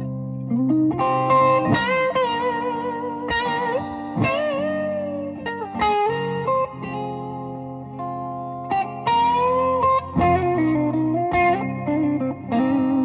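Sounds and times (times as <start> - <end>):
electric guitar lead line: 0.0 - 13.0.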